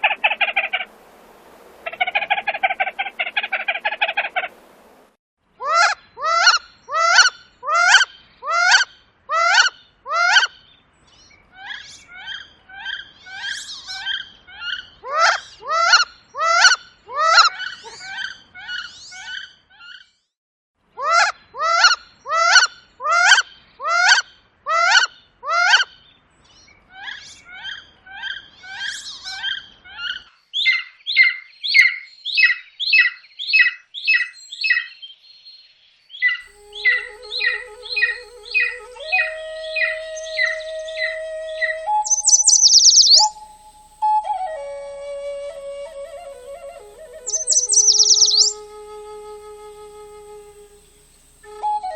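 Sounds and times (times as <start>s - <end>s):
bird calling: 0.0s - 1.0s, 1.8s - 4.9s, 36.4s - 51.9s
fast bird call series: 1.8s - 5.0s, 36.5s - 44.6s, 46.1s - 50.2s.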